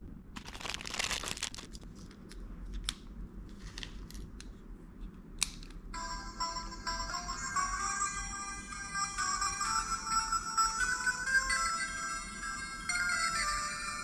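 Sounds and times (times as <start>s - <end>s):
plastic packaging rustling and tearing: 0.4s - 2.9s
electronic bell ringing from toy speaker: 6.0s - 14.0s.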